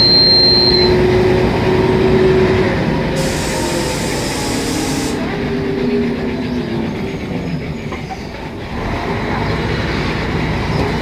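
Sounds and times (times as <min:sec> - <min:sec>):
bus diesel engine running: 0:00.0 - 0:11.0
compressed air hiss: 0:03.2 - 0:05.2.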